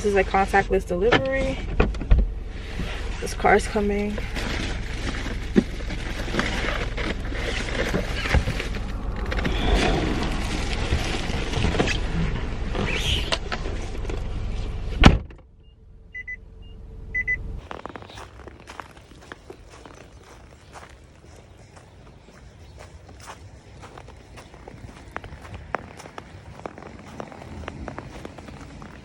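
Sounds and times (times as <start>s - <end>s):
rumble and rustling: 0.0s - 15.6s, 16.9s - 29.0s
short high beeps: 16.2s - 17.4s.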